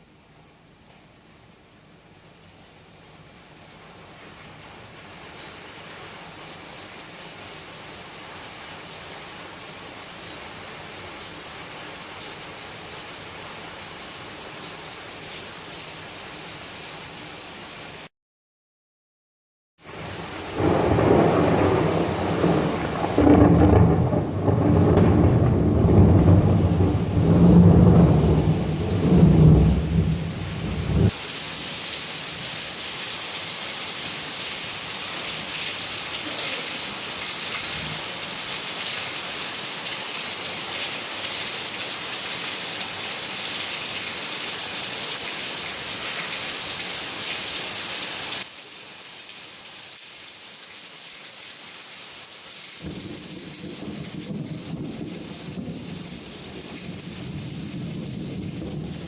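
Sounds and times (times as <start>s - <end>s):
heavy rain: 0.0s - 18.1s, 19.8s - 59.0s
thunder rumbling: 20.4s - 31.2s, 52.8s - 59.0s.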